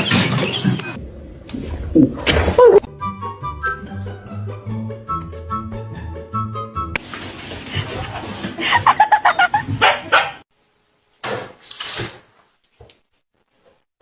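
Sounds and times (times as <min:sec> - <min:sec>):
dog barking: 0:09.8 - 0:10.4.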